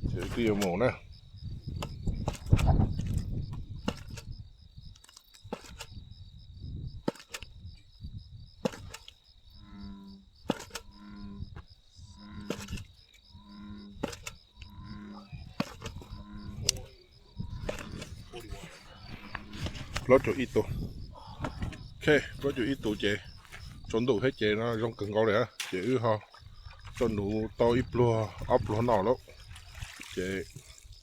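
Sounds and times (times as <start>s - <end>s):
insects chirring: 0.0s - 31.0s
sharp clicks: 7.1s - 7.6s, 12.4s - 13.2s, 14.0s - 14.7s, 15.6s - 16.9s
low pitched repeated notes: 13.4s - 23.2s.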